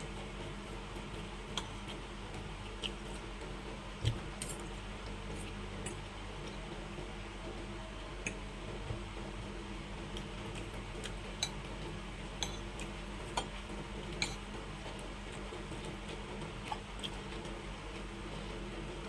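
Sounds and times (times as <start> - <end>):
steady low hum: 0.0 - 19.0
utensils tapping on a plate: 12.4 - 12.7, 14.2 - 14.5.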